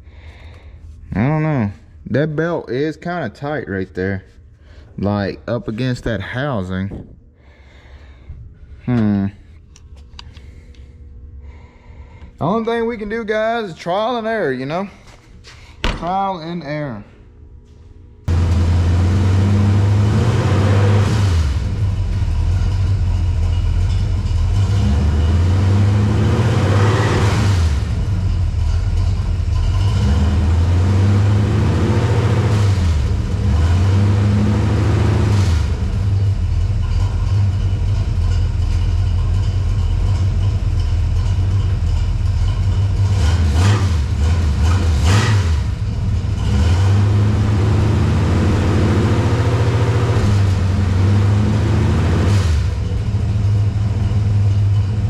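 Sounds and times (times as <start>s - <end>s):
truck engine idling and revving: 18.2s - 55.0s.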